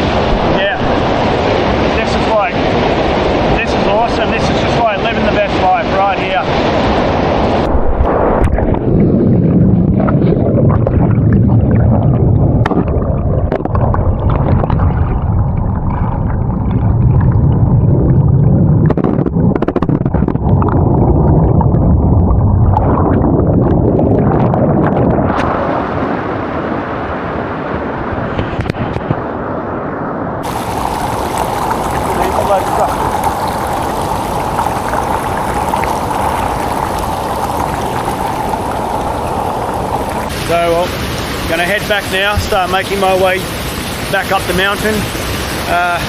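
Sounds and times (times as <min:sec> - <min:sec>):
waterfall rushing and churning: 0:00.0 - 0:07.7, 0:30.4 - 0:46.0.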